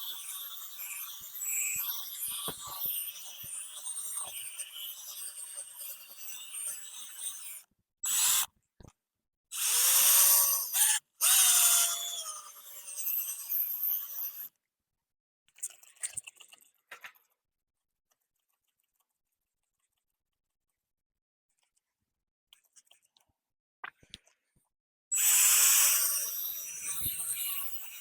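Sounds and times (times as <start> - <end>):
power drill whining: 8.0 - 8.5, 9.5 - 14.5, 25.2 - 28.0.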